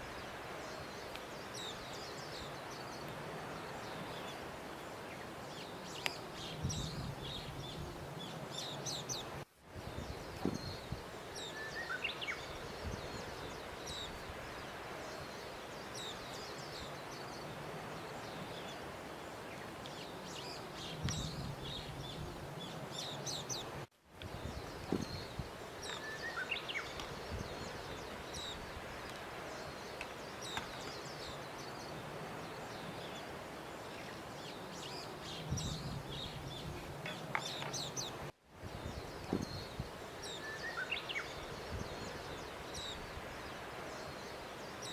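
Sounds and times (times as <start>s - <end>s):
birds chirping: 0.0s - 44.9s.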